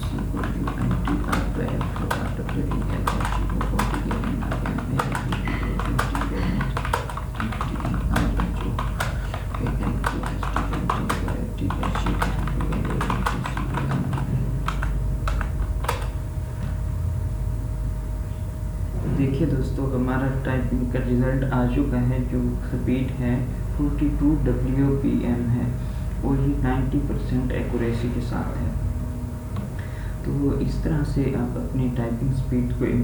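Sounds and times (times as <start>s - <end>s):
keyboard keys clicking: 0.0s - 16.2s
steady low hum: 0.0s - 33.0s.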